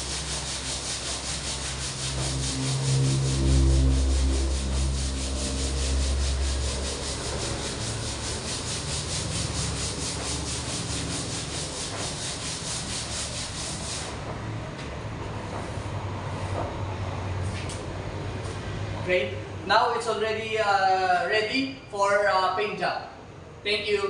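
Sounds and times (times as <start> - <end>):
low hum: 0.0 - 11.9
sandpaper scratching: 0.0 - 14.2.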